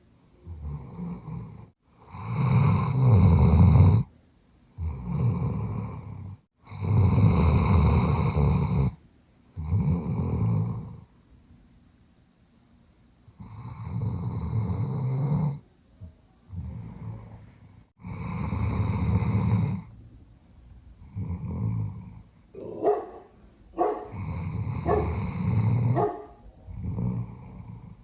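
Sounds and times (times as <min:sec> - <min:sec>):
dog snoring deeply: 0:00.4 - 0:04.1, 0:04.8 - 0:09.0, 0:09.6 - 0:11.1, 0:13.4 - 0:15.6, 0:16.5 - 0:19.9, 0:21.0 - 0:28.0
muffled dog woofs: 0:22.5 - 0:26.9.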